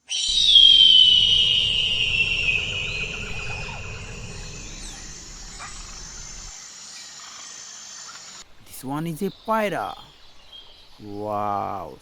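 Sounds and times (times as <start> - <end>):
high whistled bird call: 0.0 - 6.5
insects buzzing: 0.1 - 12.0.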